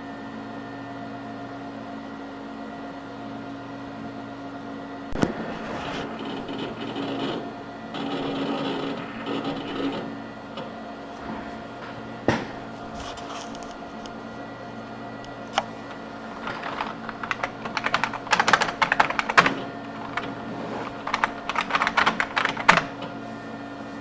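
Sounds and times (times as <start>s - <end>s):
steady electrical hum: 2.4s - 24.0s
knock: 12.3s - 12.6s
typing on computer keyboard: 16.3s - 23.1s.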